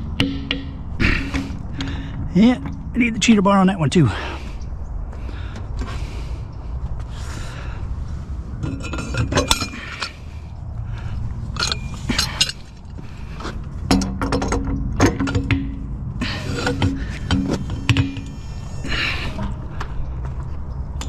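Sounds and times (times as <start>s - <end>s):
steady low hum: 0.0s - 21.0s
wrench clanking on metal: 8.6s - 10.2s, 11.5s - 12.8s.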